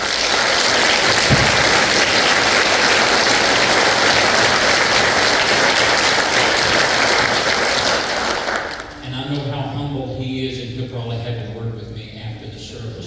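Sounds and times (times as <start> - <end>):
congregation clapping: 0.0 - 9.5.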